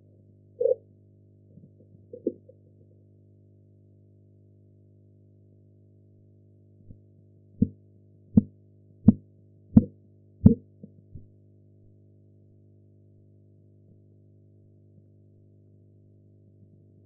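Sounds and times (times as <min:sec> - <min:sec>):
steady low hum: 0:00.0 - 0:12.2
heartbeat tapping through stethoscope: 0:08.4 - 0:09.2, 0:09.8 - 0:11.3.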